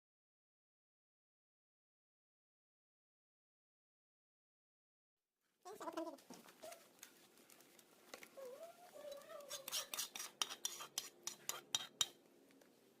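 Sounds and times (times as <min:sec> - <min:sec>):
utensil scraping a dish: 0:09.1 - 0:12.2.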